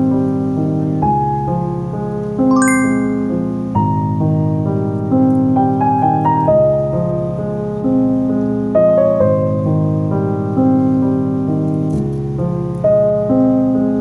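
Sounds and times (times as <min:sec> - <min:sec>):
soft piano melody: 0:00.0 - 0:14.0.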